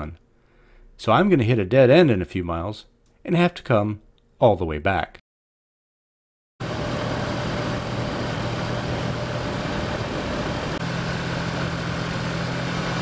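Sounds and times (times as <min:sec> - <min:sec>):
motorcycle engine running: 0:06.6 - 0:13.0.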